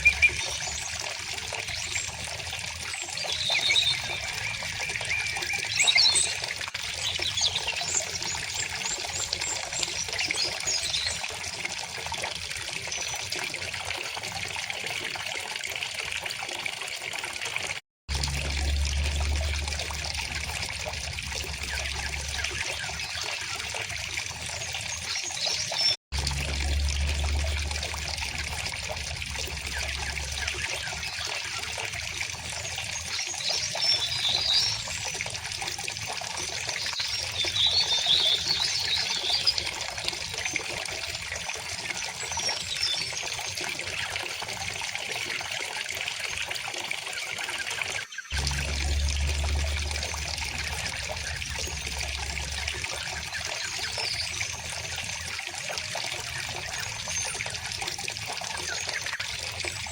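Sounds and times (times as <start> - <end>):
river water trickling: 0.0 - 59.9
low rumble: 18.1 - 22.7, 26.2 - 30.7, 48.4 - 54.4.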